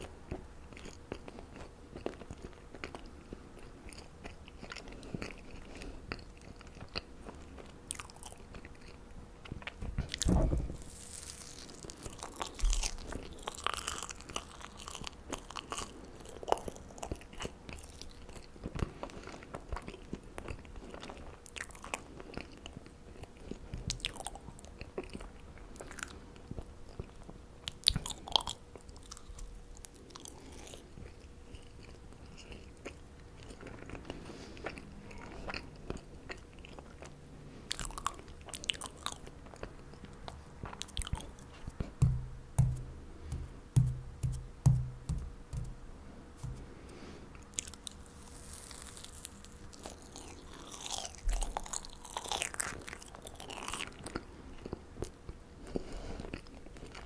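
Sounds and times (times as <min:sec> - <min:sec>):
chewing marshmallows: 0:00.0 - 0:42.4, 0:46.4 - 0:57.0
low thuds: 0:09.9 - 0:10.9, 0:41.9 - 0:46.7.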